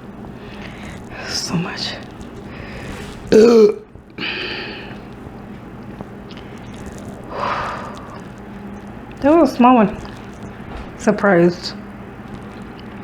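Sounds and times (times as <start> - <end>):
woman burping: 3.3 - 5.0.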